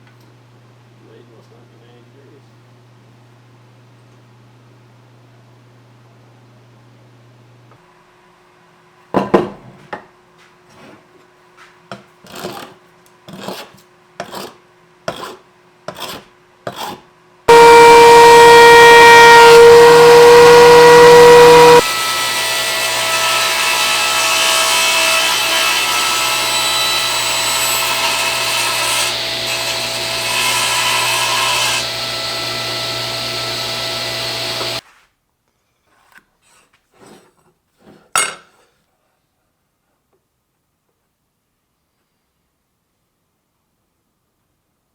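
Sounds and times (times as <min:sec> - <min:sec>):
power tool whining: 0:17.5 - 0:34.8.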